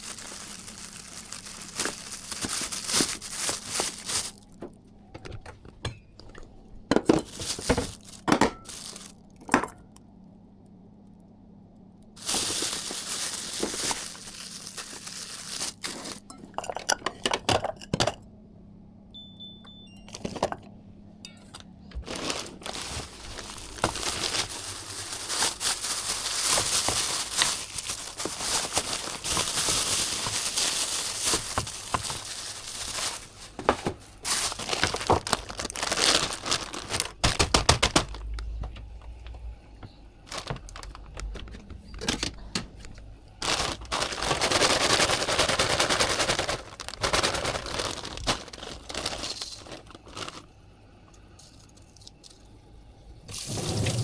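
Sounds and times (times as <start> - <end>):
plastic packaging crinkling: 0.0 - 5.4, 7.0 - 10.0, 12.2 - 16.3, 22.0 - 39.4, 40.2 - 50.5, 53.3 - 54.0.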